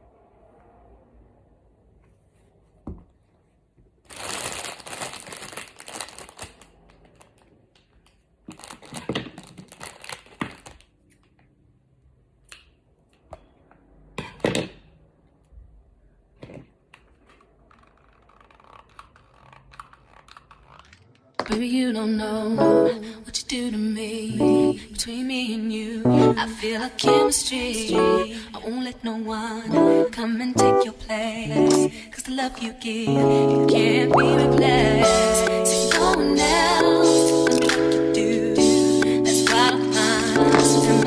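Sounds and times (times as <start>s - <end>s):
plastic packaging crinkling: 4.0s - 11.3s, 17.1s - 21.6s, 38.8s - 41.0s.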